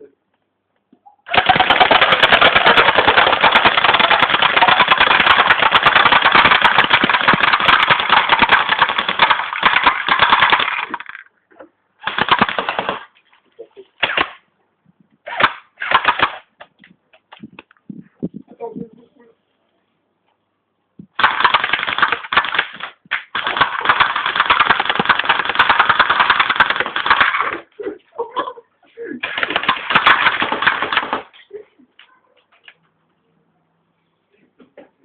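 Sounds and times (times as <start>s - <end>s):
airsoft gun firing bursts: 1.3s - 11.2s, 12.0s - 13.1s, 14.0s - 14.4s, 15.3s - 16.5s, 21.2s - 27.6s, 29.2s - 31.3s.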